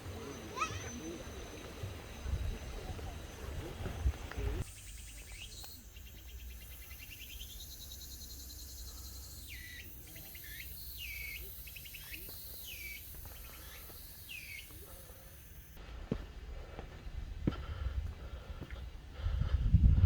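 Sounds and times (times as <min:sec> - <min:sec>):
insect pulsing trill: 0:00.0 - 0:15.8.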